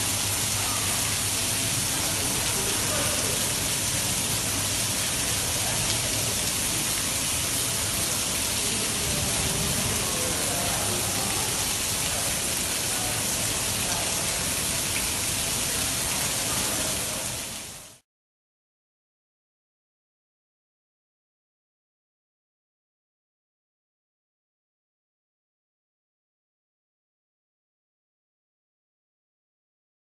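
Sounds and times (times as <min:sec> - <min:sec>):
heavy rain pouring: 0:00.0 - 0:18.0.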